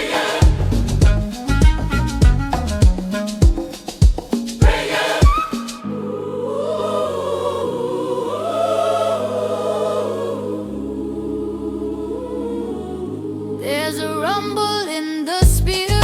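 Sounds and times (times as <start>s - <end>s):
choir singing wordless vowels: 0.0s - 0.9s, 4.6s - 15.4s
held bass chords: 0.4s - 3.0s, 15.4s - 16.0s.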